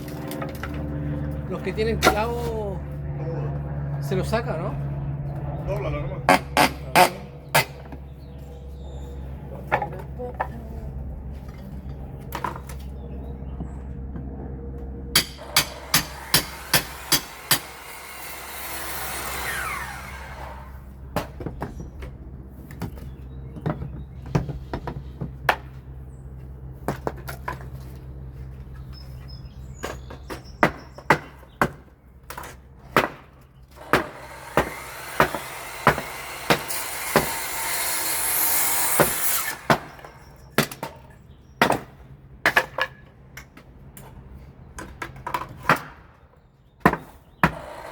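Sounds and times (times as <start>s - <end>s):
steady low hum: 0.0s - 24.8s.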